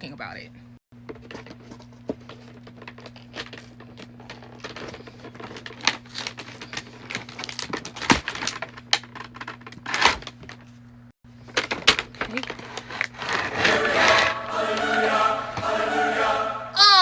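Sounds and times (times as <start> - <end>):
rustling and crinkling: 1.0 - 13.7.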